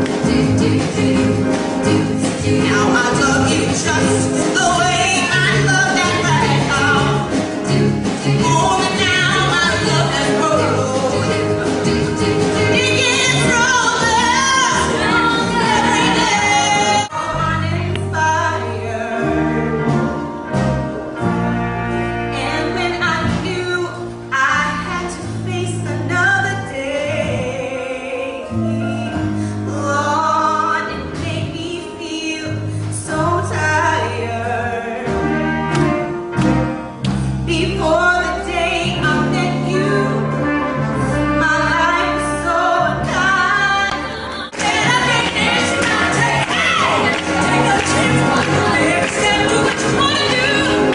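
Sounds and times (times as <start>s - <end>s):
bass line: 0.0s - 31.8s, 32.4s - 50.9s
person singing soulful song: 41.4s - 50.9s.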